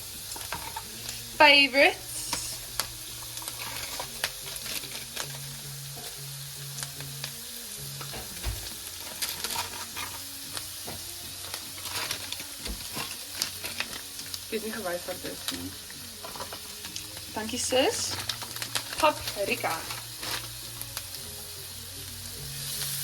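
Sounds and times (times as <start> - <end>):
food sizzling in a frying pan: 0.0 - 23.0
utensil scraping against pan: 3.4 - 5.4, 9.0 - 10.3.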